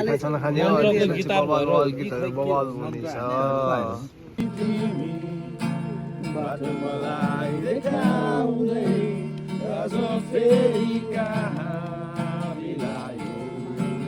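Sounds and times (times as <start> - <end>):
guitar accompaniment: 4.3 - 14.0.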